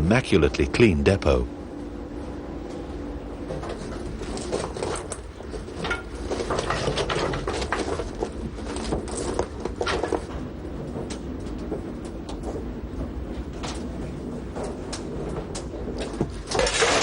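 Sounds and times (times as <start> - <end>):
steady low hum: 0.0 - 17.0
metallic clattering and knocking: 3.4 - 17.0.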